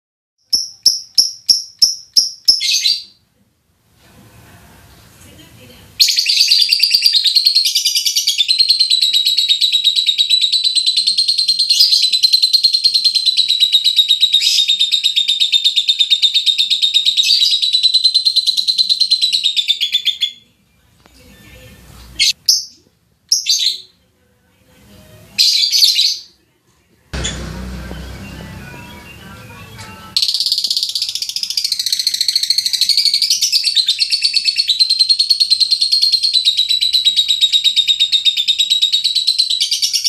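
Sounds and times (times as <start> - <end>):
lovebird chattering trill: 30.2 - 40.0.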